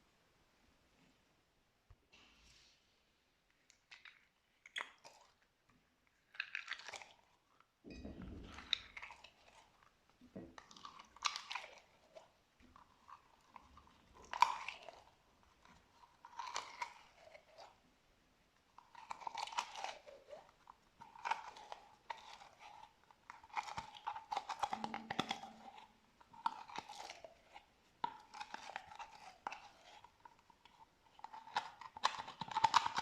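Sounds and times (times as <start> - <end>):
slime squishing and popping: 21.0 - 30.2.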